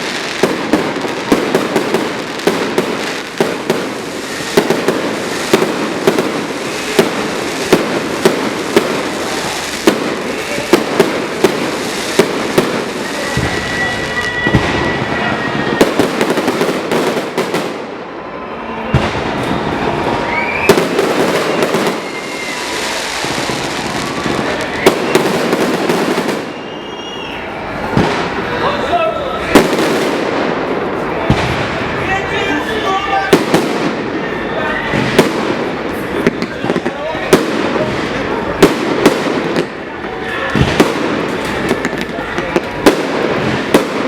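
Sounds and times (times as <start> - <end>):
firework bangs: 0.0 - 44.0
firework crackling: 0.0 - 44.0
firework whistling: 0.0 - 44.0.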